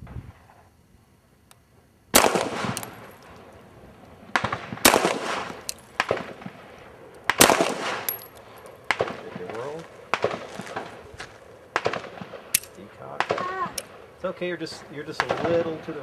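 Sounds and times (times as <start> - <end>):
pistol shots ringing: 2.1 - 3.3, 4.3 - 11.0, 11.7 - 14.1.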